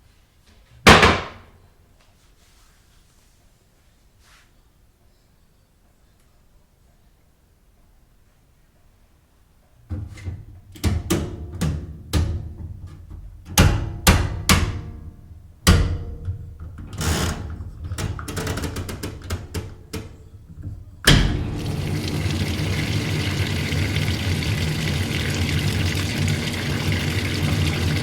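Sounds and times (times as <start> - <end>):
water rushing in: 21.3 - 28.0.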